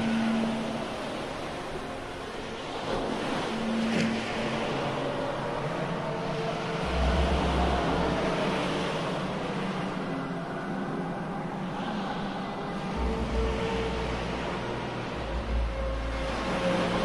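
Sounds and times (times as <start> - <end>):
stormy sea and wind: 0.0 - 17.0
deep rumble: 6.8 - 9.3, 12.8 - 17.0.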